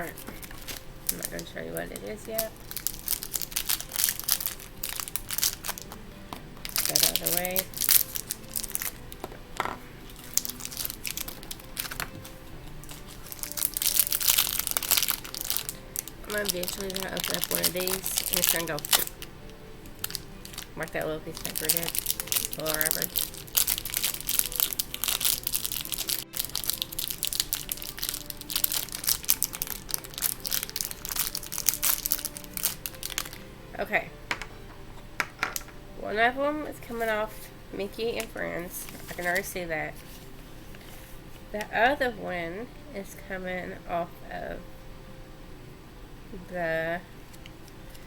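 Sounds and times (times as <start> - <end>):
toy packaging crinkling: 0.0 - 6.0, 6.6 - 33.4, 38.0 - 40.9.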